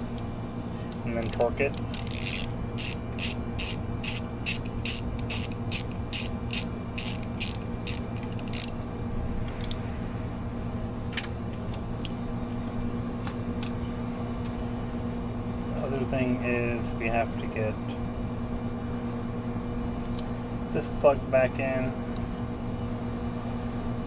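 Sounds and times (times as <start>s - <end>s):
socket ratchet clicking: 1.1s - 8.8s.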